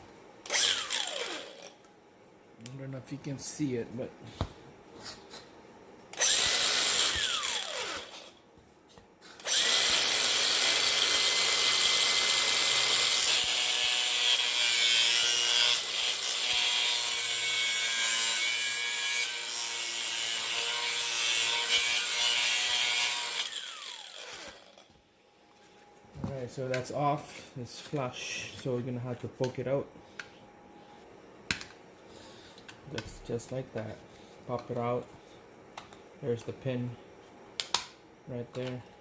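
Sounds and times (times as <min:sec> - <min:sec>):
angle grinder cutting metal: 0:00.5 - 0:01.8, 0:06.2 - 0:08.3, 0:09.4 - 0:24.9.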